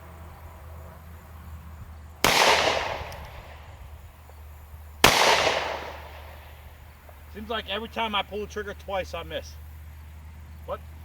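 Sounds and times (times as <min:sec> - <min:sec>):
pistol shot with echo: 0:02.2 - 0:03.7, 0:05.0 - 0:06.6.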